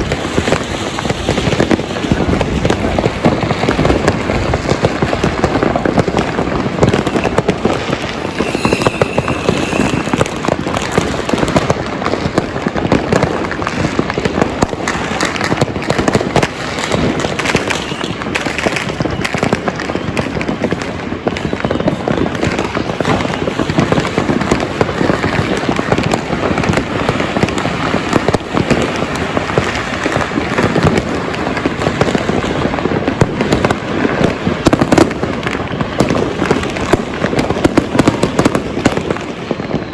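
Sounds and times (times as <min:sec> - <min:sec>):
fireworks and firecrackers banging: 0:00.0 - 0:39.9
short high whistle: 0:08.1 - 0:10.4.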